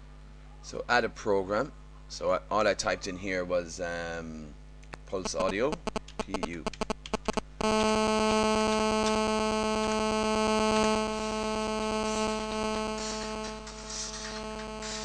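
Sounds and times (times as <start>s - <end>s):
phone interference buzz: 5.2s - 15.0s.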